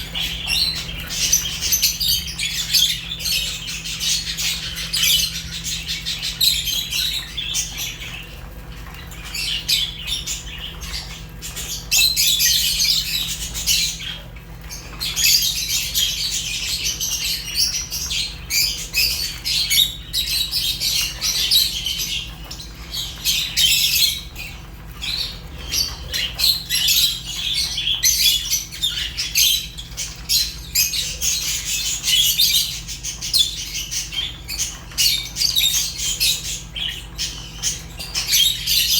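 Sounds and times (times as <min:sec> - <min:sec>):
lovebirds chirping and chattering: 0:00.0 - 0:38.9.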